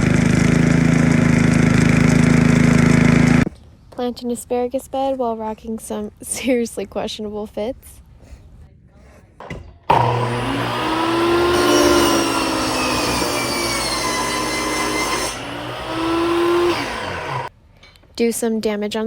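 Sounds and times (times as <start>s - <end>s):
power tool running at high speed: 9.9s - 17.5s.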